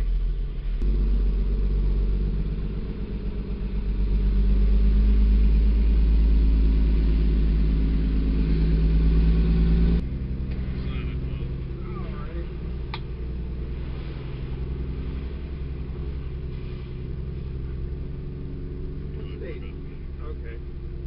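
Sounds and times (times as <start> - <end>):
vehicle engine humming: 0.0 - 21.0.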